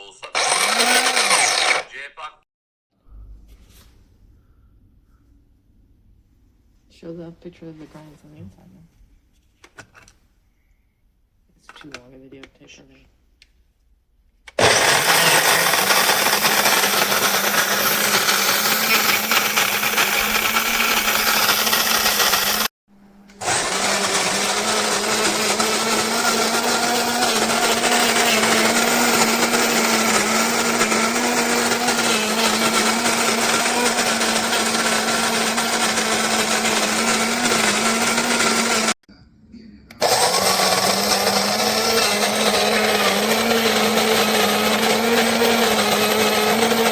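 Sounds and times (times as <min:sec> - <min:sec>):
electric coffee grinder whine: 0:00.0 - 0:01.9, 0:14.6 - 0:22.7, 0:23.3 - 0:39.0, 0:40.0 - 0:46.9.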